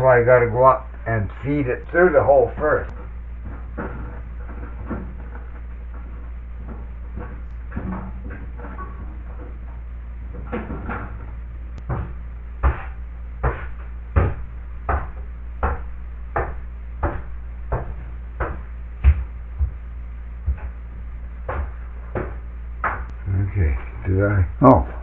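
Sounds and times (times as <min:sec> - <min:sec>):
steady low hum: 0:00.0 - 0:25.0
footsteps on wooden floor: 0:11.8 - 0:23.1.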